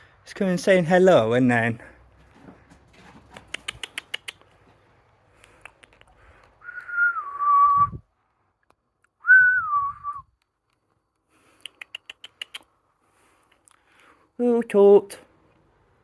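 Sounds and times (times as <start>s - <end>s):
faint clicks: 5.3s - 6.9s, 10.4s - 12.7s
person whistling: 6.6s - 8.0s, 9.2s - 10.3s.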